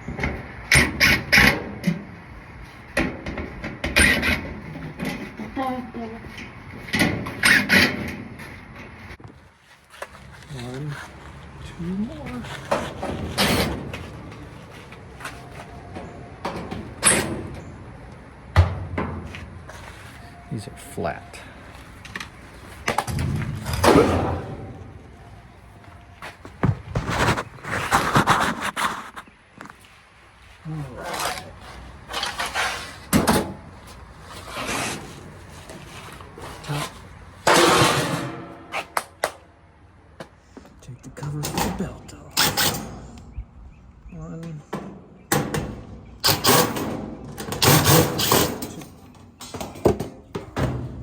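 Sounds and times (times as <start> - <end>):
dryer panels knocking and scraping: 12.2 - 17.8, 18.5 - 19.9, 31.2 - 38.9, 44.7 - 51.0
metal scraping slide: 31.0 - 33.5, 34.2 - 38.9, 46.2 - 49.0.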